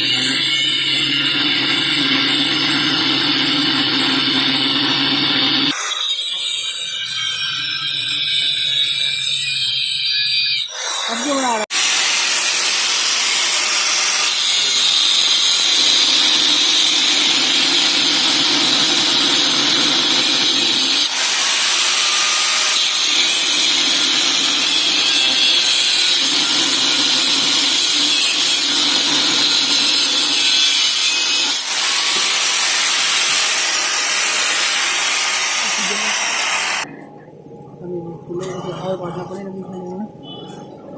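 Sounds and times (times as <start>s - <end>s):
angle grinder cutting steel: 0.0s - 36.9s.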